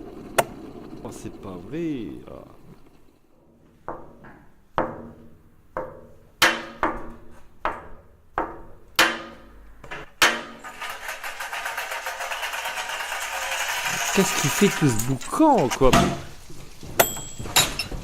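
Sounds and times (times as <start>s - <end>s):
rapid rattling: 10.2s - 16.8s.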